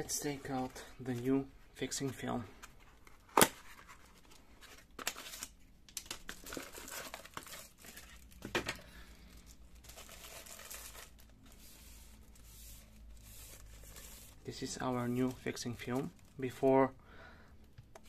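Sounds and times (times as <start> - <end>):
packaging crinkling and tearing: 3.2 - 8.6, 9.2 - 16.6.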